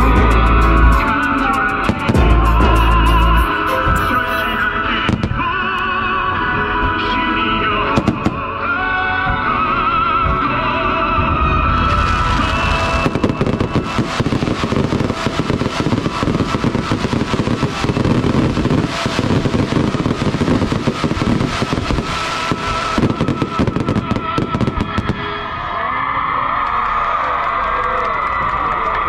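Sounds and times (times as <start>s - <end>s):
fireworks bangs and crackles: 0.0s - 4.5s, 5.1s - 5.6s, 7.9s - 8.4s, 11.1s - 25.6s.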